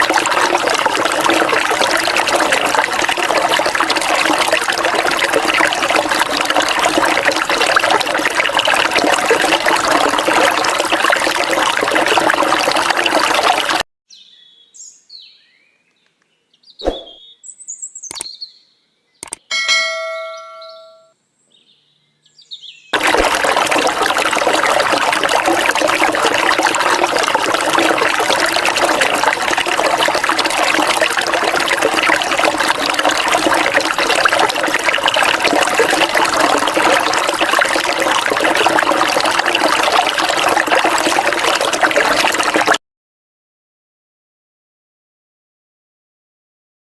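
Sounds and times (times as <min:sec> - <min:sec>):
flowing river water: 0:00.0 - 0:13.8, 0:23.0 - 0:42.8
brief ringing tone: 0:19.5 - 0:21.2.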